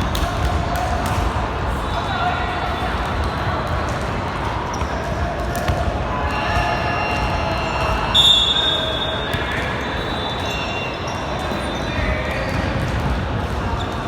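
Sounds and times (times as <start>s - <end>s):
sneakers squeaking: 4.7s - 13.2s.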